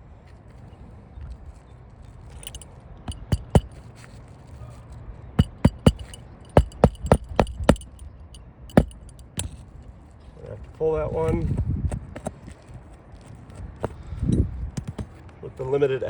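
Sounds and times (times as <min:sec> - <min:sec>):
hammer striking nail: 0:02.4 - 0:03.7, 0:05.4 - 0:08.0, 0:08.7 - 0:09.5.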